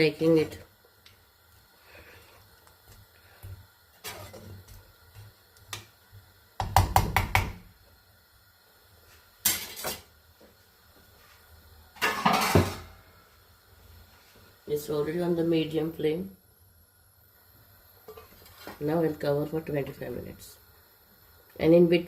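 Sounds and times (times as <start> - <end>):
spoon scraping a pan: 3.4 - 4.7, 18.1 - 18.8.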